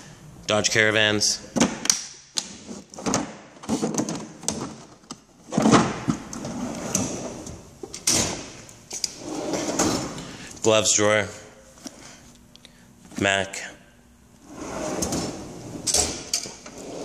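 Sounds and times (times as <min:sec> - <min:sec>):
tool box drawers sliding: 0:02.6 - 0:10.2, 0:14.4 - 0:17.0
drawers knocking shut: 0:05.5 - 0:07.2.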